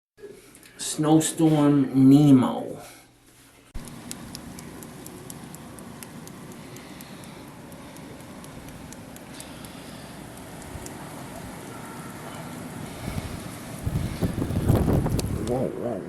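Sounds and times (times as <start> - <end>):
sharp ticks: 3.8 - 11.8, 13.0 - 15.6
snowstorm wind: 12.8 - 15.6.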